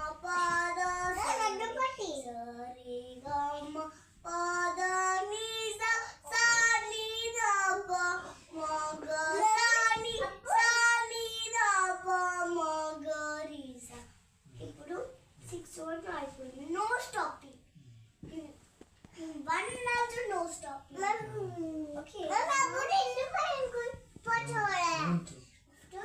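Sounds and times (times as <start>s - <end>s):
child singing: 0.0s - 14.0s.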